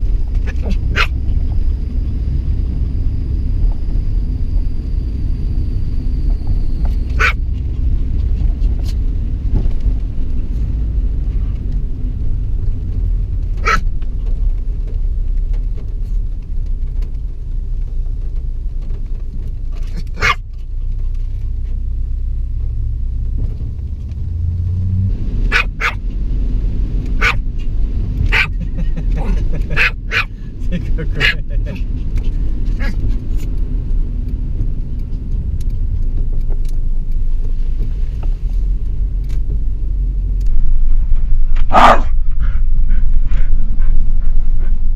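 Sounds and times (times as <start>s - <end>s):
car cabin rumble: 0.0s - 44.9s
small dog barking: 0.4s - 1.2s, 7.1s - 7.4s, 13.6s - 13.8s, 20.0s - 20.4s, 25.5s - 26.0s, 27.2s - 27.4s, 28.3s - 28.6s, 29.7s - 30.3s, 31.1s - 31.4s, 32.8s - 33.0s, 41.7s - 42.1s.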